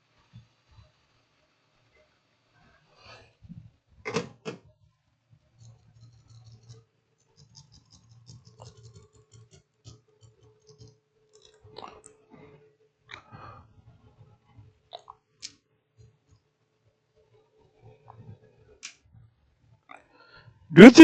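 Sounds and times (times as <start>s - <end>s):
small parts clicking and rattling: 5.6s - 11.6s.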